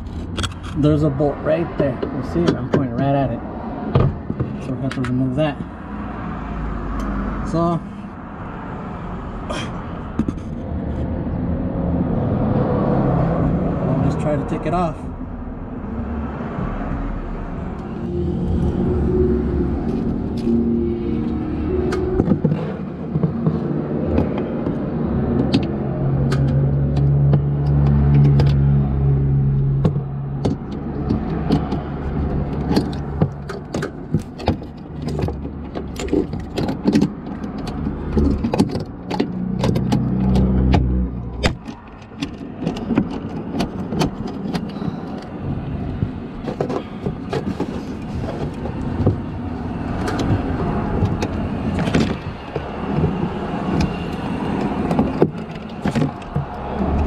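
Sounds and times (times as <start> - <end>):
low rumble: 10.6 - 25.3.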